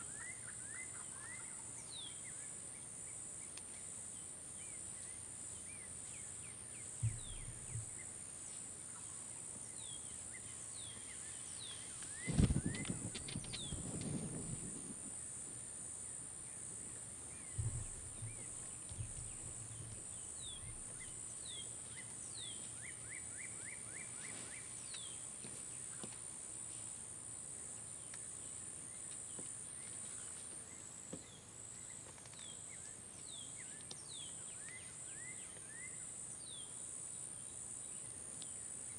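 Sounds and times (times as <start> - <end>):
insect trill: 0.0 - 38.9
bird chirps: 7.0 - 8.0, 17.4 - 25.2
low thumps: 7.0 - 8.0, 17.6 - 21.0.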